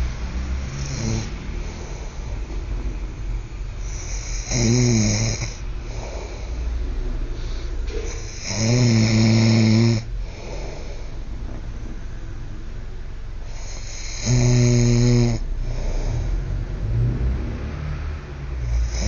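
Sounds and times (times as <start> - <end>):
quiet breathing: 0.0 - 4.5, 5.4 - 8.5, 10.0 - 14.4, 15.4 - 16.9
man snoring loudly: 0.7 - 2.2, 3.8 - 6.4, 8.2 - 10.8, 13.5 - 17.3, 18.6 - 19.0.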